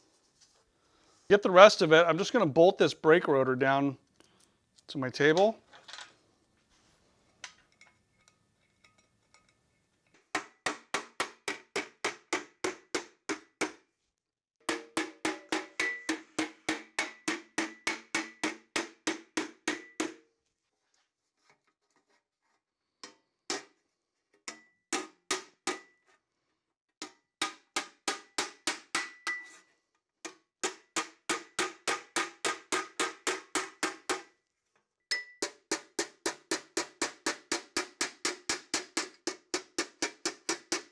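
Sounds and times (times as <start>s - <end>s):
hammer beating sheet metal: 10.4s - 13.8s, 14.6s - 20.2s, 24.5s - 25.9s, 27.0s - 29.6s, 30.6s - 34.3s, 35.4s - 40.9s.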